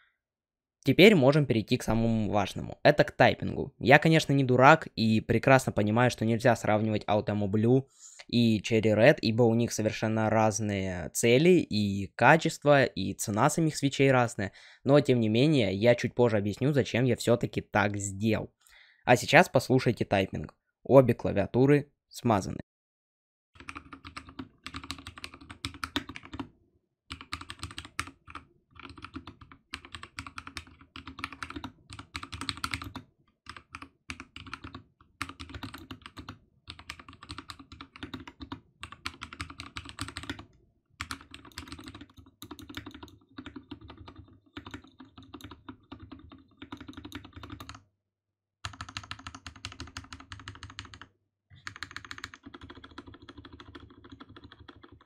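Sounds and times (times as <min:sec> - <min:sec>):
mechanical keyboard typing: 0:23.6 - 0:26.5, 0:27.1 - 0:47.8, 0:48.6 - 0:55.0.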